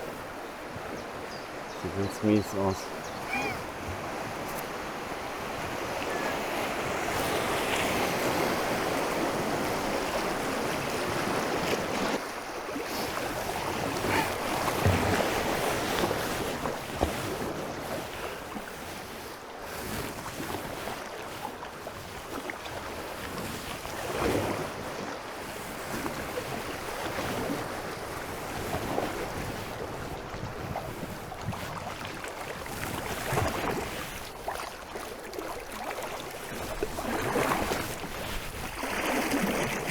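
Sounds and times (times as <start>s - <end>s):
river water rushing: 1.9s - 16.6s
wind buffeting microphone: 26.4s - 32.1s.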